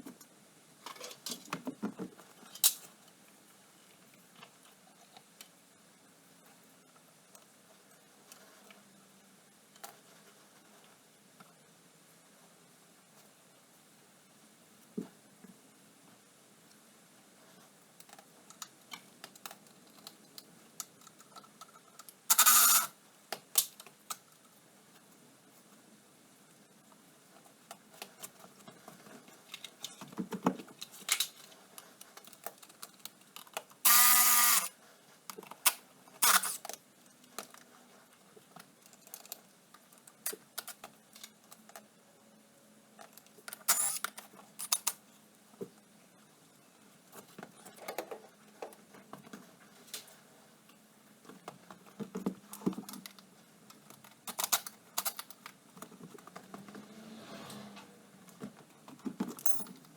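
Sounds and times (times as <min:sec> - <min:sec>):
clinks of hand tools and metal parts: 0:59.1 - 0:59.9.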